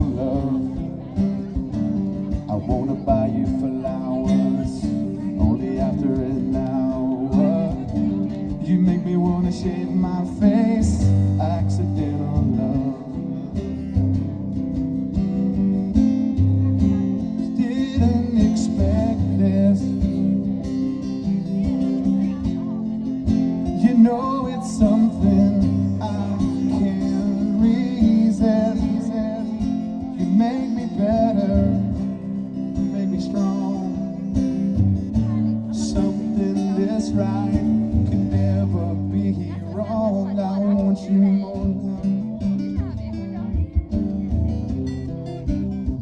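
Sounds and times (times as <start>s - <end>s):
song with acoustic guitar and bass: 0.0s - 46.0s.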